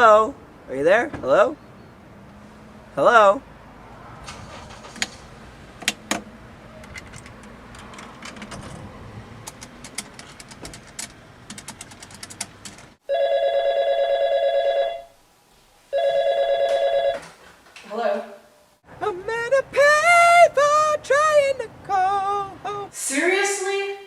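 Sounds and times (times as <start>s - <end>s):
telephone ringing: 13.0s - 15.1s, 15.9s - 17.3s.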